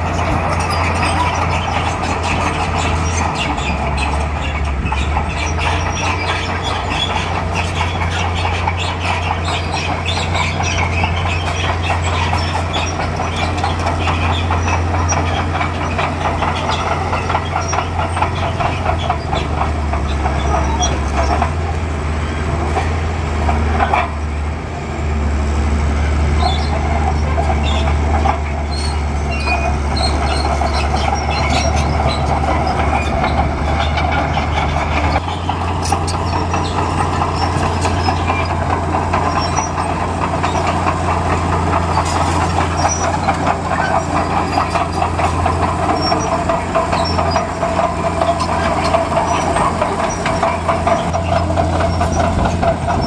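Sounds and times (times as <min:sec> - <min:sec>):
crawler tracks clanking: 0:00.0 - 0:53.0
diesel engine running: 0:00.0 - 0:53.0.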